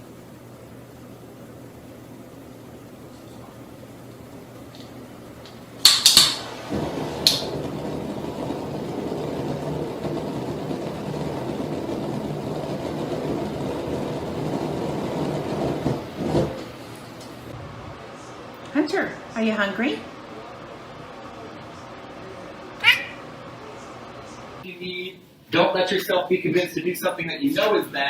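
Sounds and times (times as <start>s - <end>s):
flame vortex rushing rumble: 6.2s - 18.2s.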